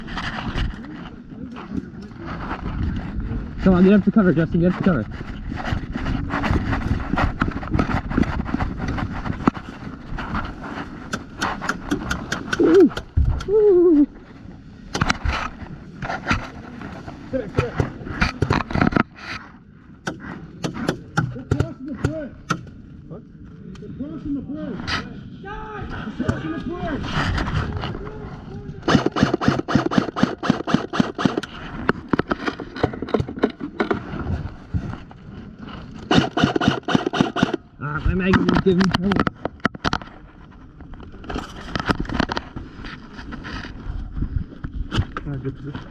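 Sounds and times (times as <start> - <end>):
wind rumbling on microphone: 0.0 - 28.9, 31.4 - 36.1, 37.5 - 45.9
airsoft guns firing: 28.9 - 31.5, 36.1 - 37.6.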